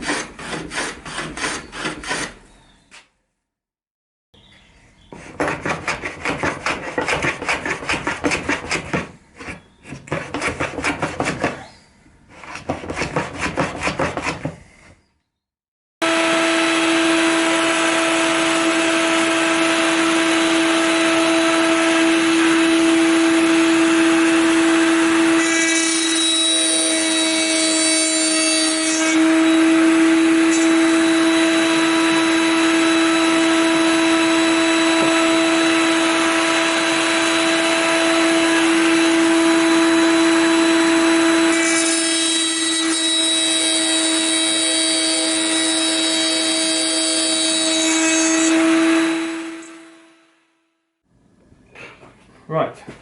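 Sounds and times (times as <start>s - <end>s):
router whining cutting wood: 16.0s - 27.9s, 28.7s - 50.3s.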